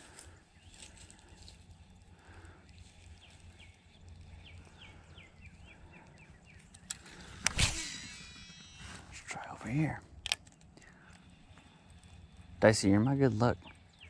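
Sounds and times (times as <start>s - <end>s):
sharp click: 6.8s - 9.0s
bird whistling downward notes: 7.4s - 9.2s.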